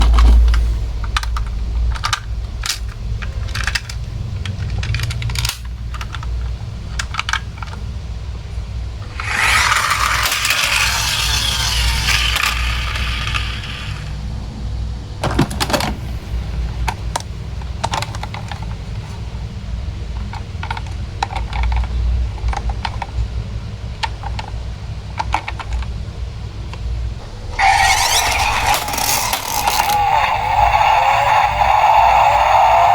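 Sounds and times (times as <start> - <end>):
plastic toys clicking and knocking: 1.1 - 8.0, 9.1 - 14.1, 16.9 - 18.8, 20.2 - 23.2, 24.0 - 26.0, 27.6 - 32.9.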